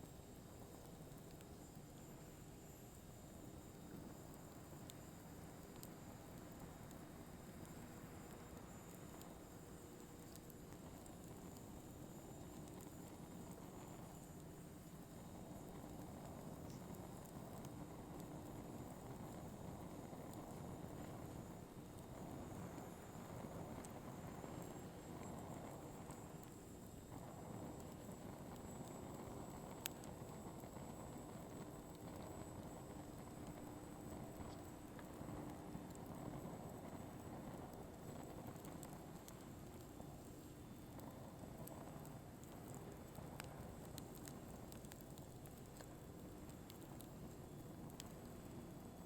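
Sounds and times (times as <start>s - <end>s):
firewood crackling: 0.0s - 49.0s
low steady hiss: 0.0s - 49.0s.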